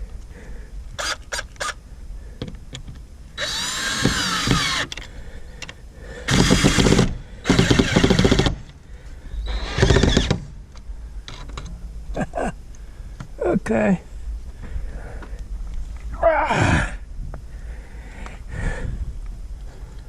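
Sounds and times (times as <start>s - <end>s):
power drill bursts: 1.0s - 1.8s, 3.4s - 5.0s, 6.3s - 8.7s, 9.4s - 10.5s.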